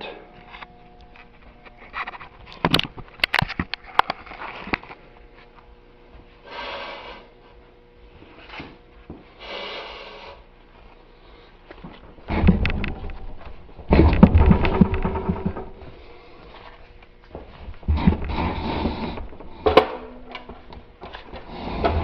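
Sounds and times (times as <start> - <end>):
person breathing with exertion: 6.4 - 7.4, 9.3 - 10.5, 17.8 - 20.1, 21.3 - 22.0.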